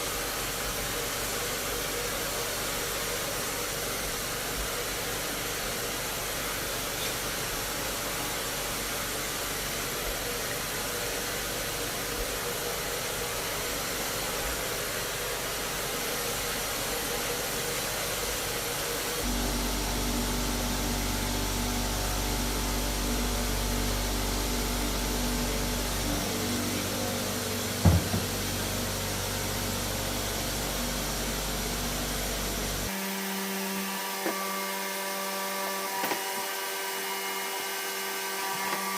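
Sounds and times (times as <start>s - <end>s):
machine motor running: 19.1s - 33.3s
short knock: 27.8s - 28.5s.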